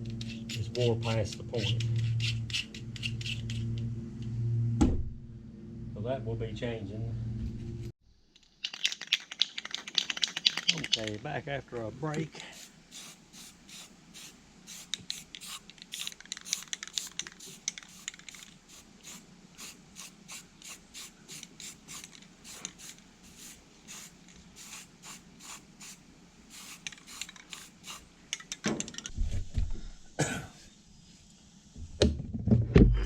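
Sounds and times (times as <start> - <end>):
scratchy scraping strokes: 0.0 - 4.0
parts knocking and thumping: 28.4 - 29.9.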